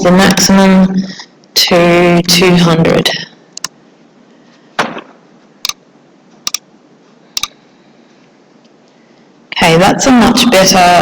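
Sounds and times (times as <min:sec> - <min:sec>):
microphone hiss: 0:00.0 - 0:11.0
computer key and mouse clicks: 0:06.4 - 0:06.6, 0:07.4 - 0:07.6.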